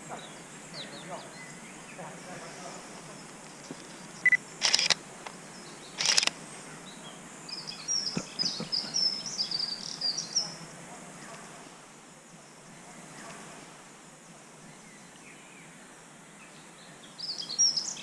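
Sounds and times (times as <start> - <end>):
small bird chirping: 3.5 - 5.0, 5.6 - 6.3, 7.5 - 10.6
camera focus beep: 4.2 - 5.0, 6.0 - 6.4
camera shutter bursts: 4.2 - 5.0, 6.0 - 6.4.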